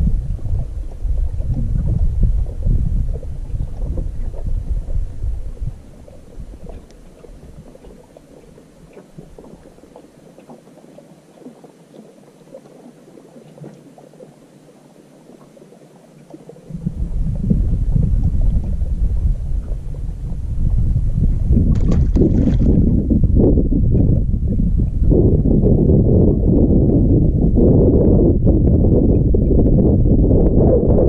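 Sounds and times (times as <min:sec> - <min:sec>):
wind buffeting microphone: 0:00.0 - 0:08.5, 0:16.7 - 0:31.0
light water sounds: 0:00.0 - 0:25.8.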